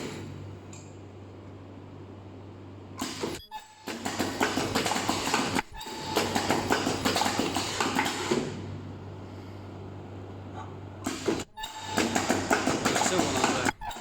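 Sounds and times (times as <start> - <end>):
machine low hum: 0.0 - 13.9
welding machine clicking and clatter: 3.9 - 8.4, 11.1 - 14.0.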